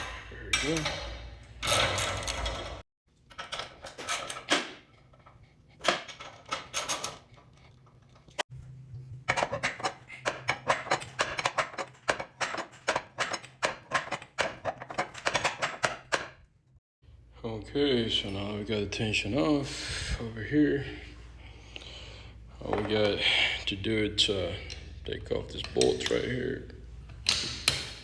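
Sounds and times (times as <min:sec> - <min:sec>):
metal bars clicking and clanking: 0:00.0 - 0:05.2, 0:09.3 - 0:16.4.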